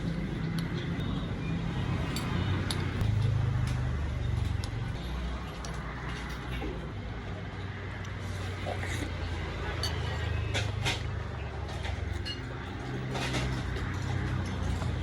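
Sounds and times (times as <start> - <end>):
passing motor vehicle rumble: 0.0 - 15.0
dishes and utensils clinking: 8.6 - 15.0.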